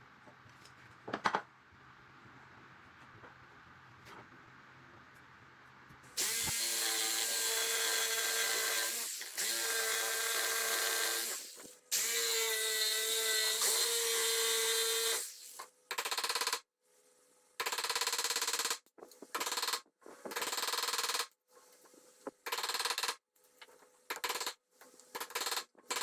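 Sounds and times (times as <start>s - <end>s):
power tool motor whining: 6.2s - 12.3s.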